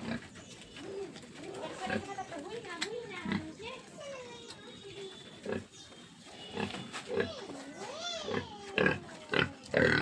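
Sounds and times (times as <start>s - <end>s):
pigs grunting and squealing: 8.2s - 10.0s.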